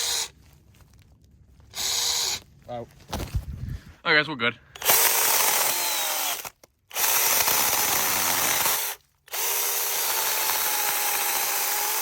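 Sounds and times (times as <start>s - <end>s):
electric chainsaw motor whining: 4.8s - 12.0s.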